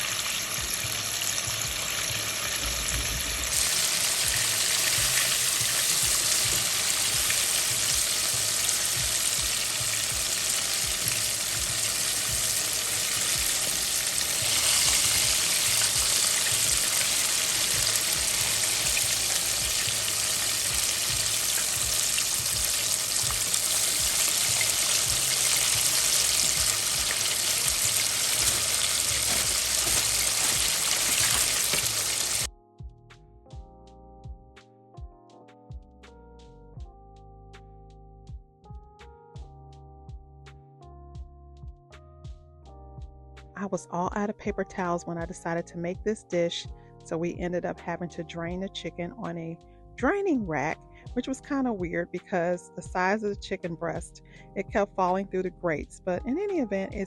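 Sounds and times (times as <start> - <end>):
chicken sizzling in hot oil: 0.0 - 32.5.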